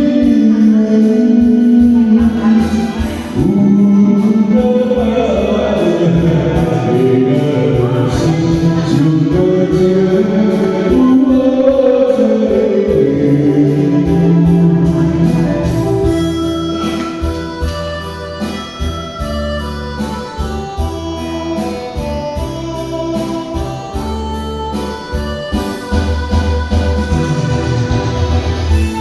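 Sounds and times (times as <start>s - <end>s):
person singing a ballad: 0.0s - 19.4s
instrumental accompaniment: 0.0s - 29.0s.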